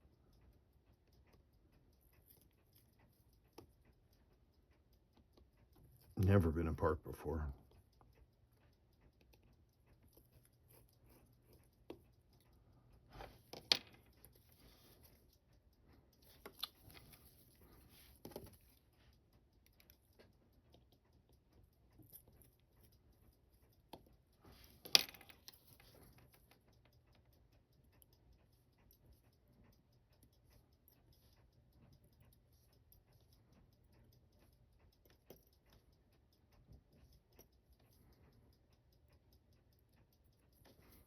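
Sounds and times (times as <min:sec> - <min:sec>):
small metal tools clicking: 0:19.6 - 0:27.4.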